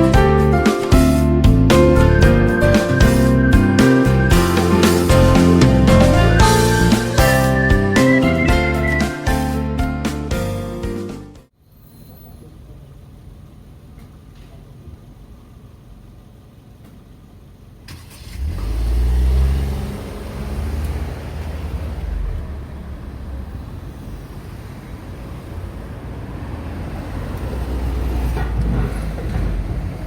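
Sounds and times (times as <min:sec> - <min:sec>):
car engine passing: 0:00.6 - 0:09.6, 0:17.8 - 0:30.0.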